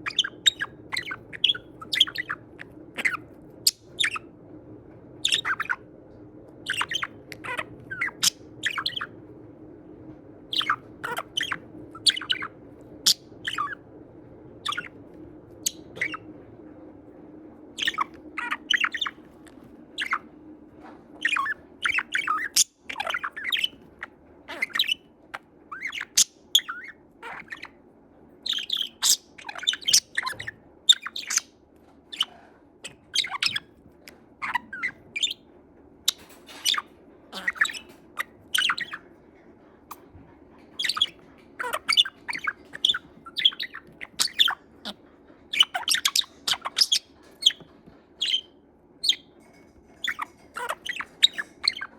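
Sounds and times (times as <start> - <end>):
budgerigar chattering: 0.0 - 2.4, 5.2 - 5.8, 6.7 - 9.1, 10.5 - 12.5, 13.1 - 13.8, 14.6 - 14.9, 15.7 - 16.2, 17.8 - 19.2, 21.2 - 23.8, 24.5 - 25.0, 28.4 - 31.5, 36.1 - 39.0, 40.8 - 47.6, 48.2 - 49.3, 50.0 - 51.9
faint steady hum: 0.0 - 51.9.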